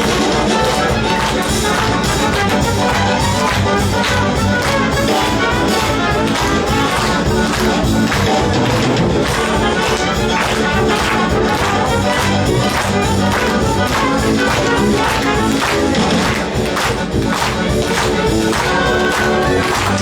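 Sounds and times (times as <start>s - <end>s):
brass music with steady beat: 0.0s - 20.0s.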